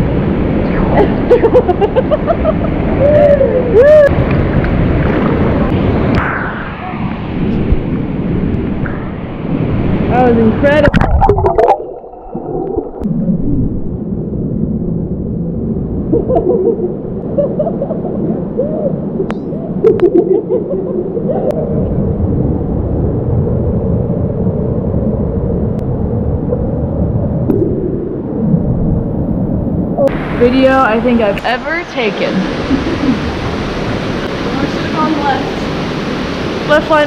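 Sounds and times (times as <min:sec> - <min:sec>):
muffled waterfall rushing: 0:00.0 - 0:23.8, 0:26.2 - 0:37.0
water gurgling: 0:00.4 - 0:22.6.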